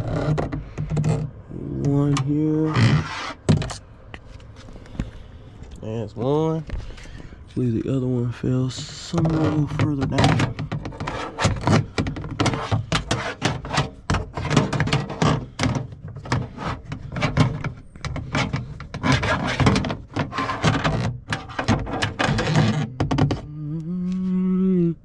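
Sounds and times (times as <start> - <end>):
knocks and rattles inside car door: 9.4 - 23.4.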